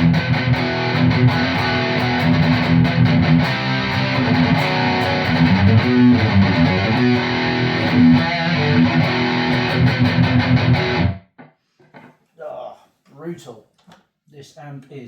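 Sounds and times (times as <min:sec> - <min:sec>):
distorted electric guitar riff: 0:00.0 - 0:11.3.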